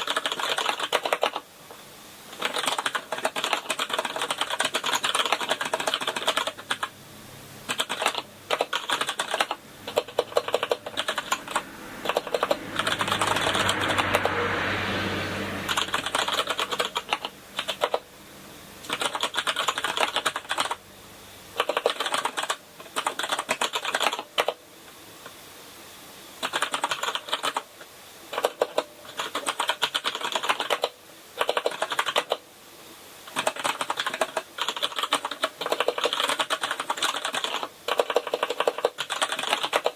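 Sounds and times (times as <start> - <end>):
rushing noise: 9.1 - 18.8.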